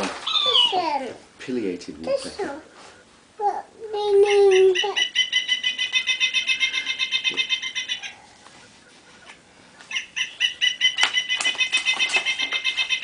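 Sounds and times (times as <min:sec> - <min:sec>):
recorded woodpecker call: 0:04.2 - 0:08.2, 0:09.9 - 0:13.0.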